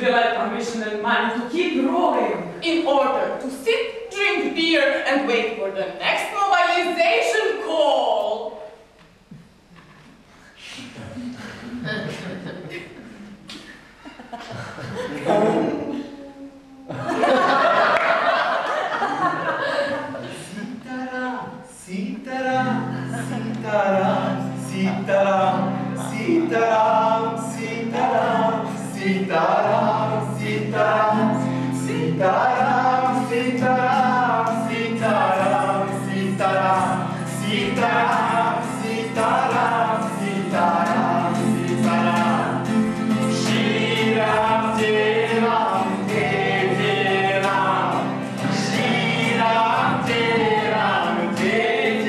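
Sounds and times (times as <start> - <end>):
group singing slow chant: 22.6 - 52.0.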